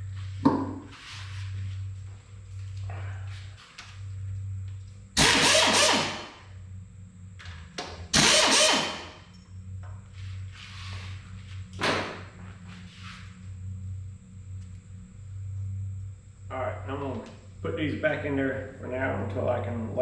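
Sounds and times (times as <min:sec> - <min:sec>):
steady low hum: 0:00.0 - 0:20.0
power tool running: 0:05.2 - 0:06.4, 0:08.1 - 0:09.2.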